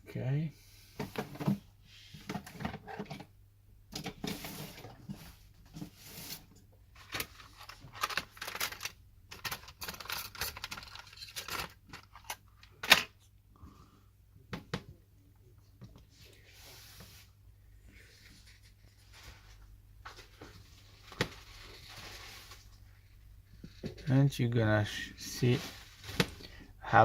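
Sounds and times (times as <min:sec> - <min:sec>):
plastic parts clicking and scraping: 0:07.0 - 0:13.3.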